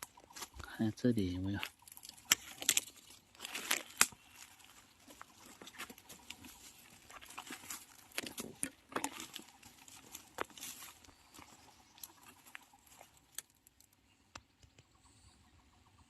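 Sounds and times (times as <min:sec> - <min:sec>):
dry leaves and twigs crackling: 0:00.0 - 0:15.0
sharp snaps of twigs: 0:01.6 - 0:04.8.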